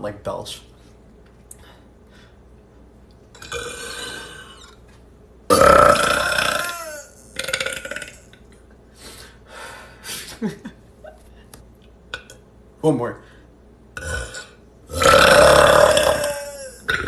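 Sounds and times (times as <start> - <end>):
man belching: 3.4 - 4.7, 5.5 - 8.3, 14.0 - 17.0.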